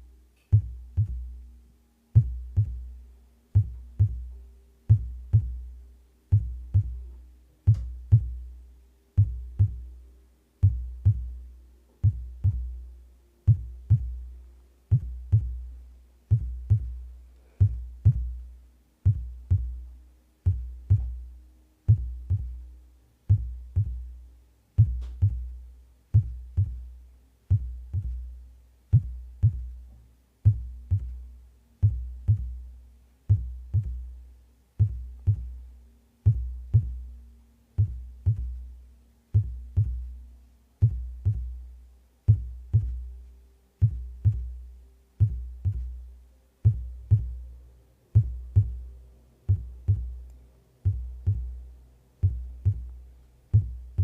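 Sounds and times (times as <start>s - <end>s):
faint low hum: 0.0s - 54.0s
heartbeat double thump: 0.5s - 1.4s, 2.2s - 2.9s, 3.6s - 5.7s, 6.3s - 7.1s, 7.7s - 8.4s, 9.2s - 9.9s, 10.6s - 11.4s, 12.0s - 12.8s, 13.5s - 14.2s, 14.9s - 15.7s, 16.3s - 17.0s, 17.6s - 18.4s, 19.0s - 19.8s, 20.4s - 21.2s, 21.9s - 22.6s, 23.3s - 24.1s, 24.8s - 25.6s, 26.2s - 26.9s, 27.5s - 28.3s, 28.9s - 29.8s, 30.5s - 31.2s, 31.8s - 32.6s, 33.3s - 34.0s, 34.8s - 35.6s, 36.2s - 37.0s, 37.8s - 38.6s, 39.4s - 40.1s, 40.8s - 41.6s, 42.3s - 43.1s, 43.8s - 44.6s, 45.2s - 46.0s, 46.6s - 47.4s, 48.2s - 48.8s, 49.4s - 50.2s, 50.8s - 51.6s, 52.2s - 54.0s.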